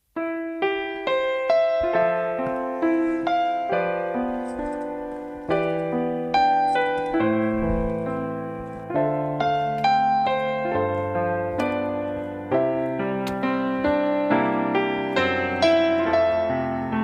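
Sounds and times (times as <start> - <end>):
piano music: 0.1 - 17.0.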